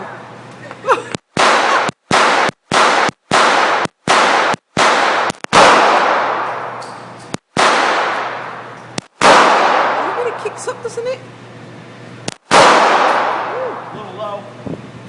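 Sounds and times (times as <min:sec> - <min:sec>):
pistol shots: 0:01.1 - 0:10.6, 0:12.3 - 0:14.0.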